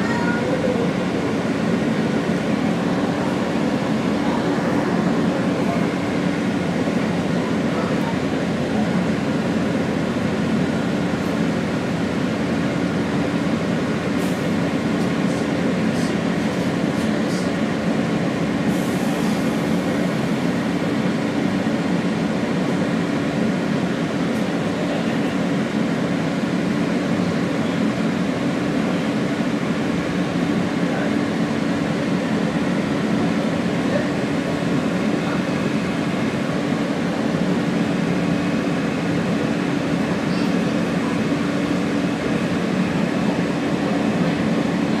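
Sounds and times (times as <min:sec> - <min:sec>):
subway car rumble and hum: 0:00.0 - 0:45.0.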